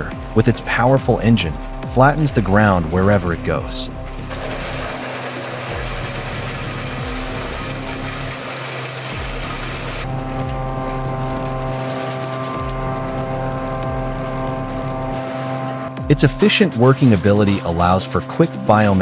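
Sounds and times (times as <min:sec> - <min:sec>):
forestry harvester engine running: 0:00.0 - 0:19.0.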